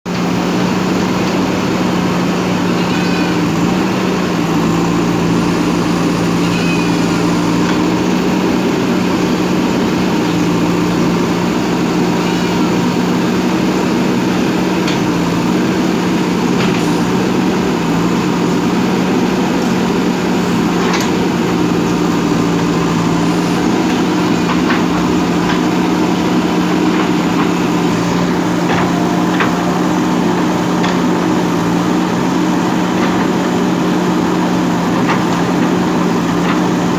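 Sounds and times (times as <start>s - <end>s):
diesel engine running: 0.0s - 36.9s
short high squeaks: 2.7s - 3.6s.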